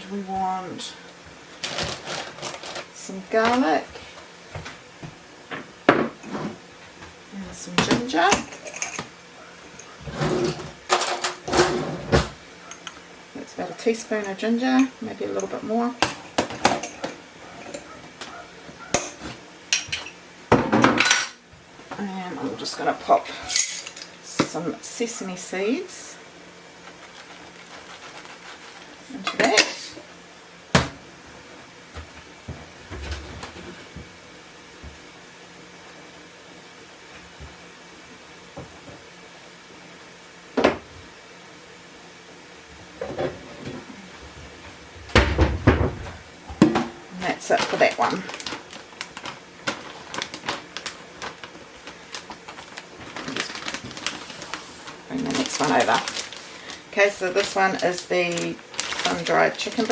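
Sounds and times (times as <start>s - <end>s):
utensils clattering: 8.3s - 9.1s, 9.8s - 12.9s, 23.3s - 24.1s.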